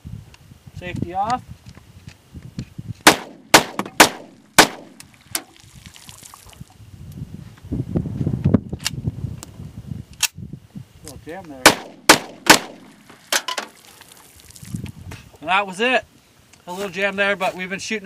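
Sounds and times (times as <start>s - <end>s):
pistol shots: 3.0s - 5.0s, 11.6s - 13.0s.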